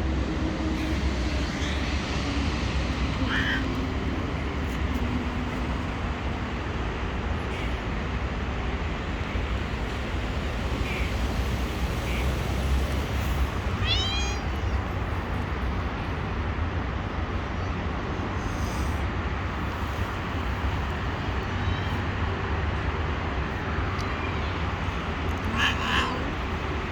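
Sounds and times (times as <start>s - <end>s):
cat meowing: 3.1s - 4.2s, 13.6s - 15.0s, 23.9s - 26.9s.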